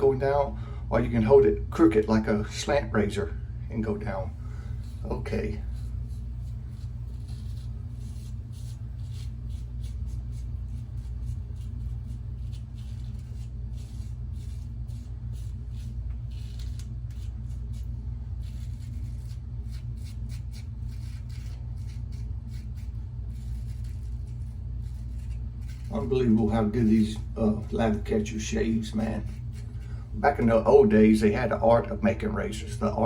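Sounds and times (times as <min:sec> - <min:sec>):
steady low hum: 0:00.0 - 0:33.0
razor rasping through stubble: 0:04.6 - 0:30.5.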